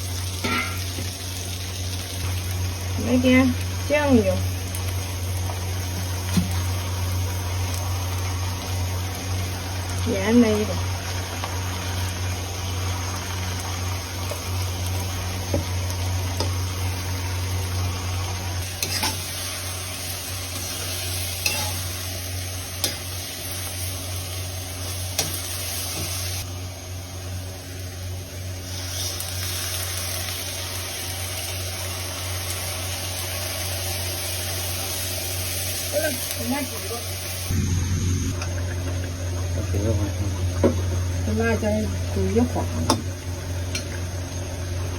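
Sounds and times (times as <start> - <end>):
food sizzling in a wok: 0.0 - 44.9
steady low hum: 37.4 - 44.9.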